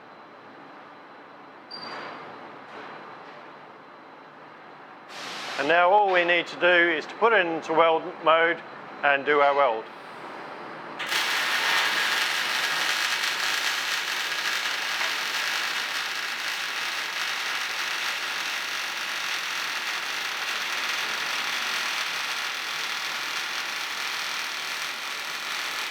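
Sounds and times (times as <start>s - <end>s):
welding arc crackling: 11.0s - 25.9s.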